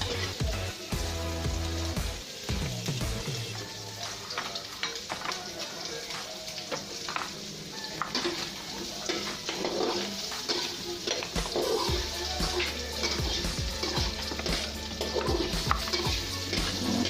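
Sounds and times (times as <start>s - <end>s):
meat sizzling in a pan: 0.0s - 17.0s
spatula scraping a pan: 7.1s - 17.0s.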